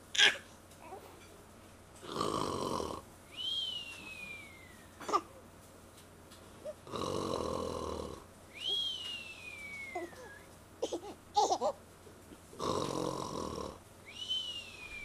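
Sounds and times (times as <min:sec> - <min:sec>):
man snoring: 0:02.0 - 0:03.0, 0:06.8 - 0:08.3, 0:12.6 - 0:13.8.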